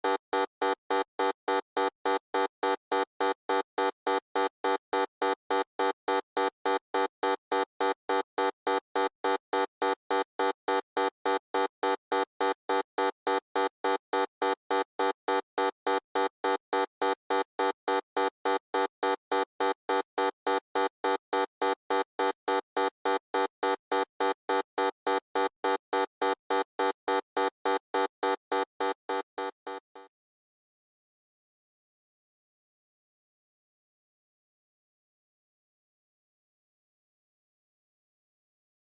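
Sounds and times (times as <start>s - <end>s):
electronic buzzer pulsing: 0.0s - 30.1s.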